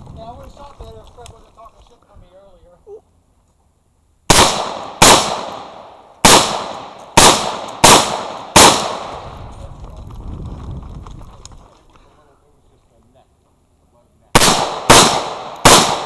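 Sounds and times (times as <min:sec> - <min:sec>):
pistol shots with echo: 0:04.3 - 0:09.4, 0:14.4 - 0:16.0.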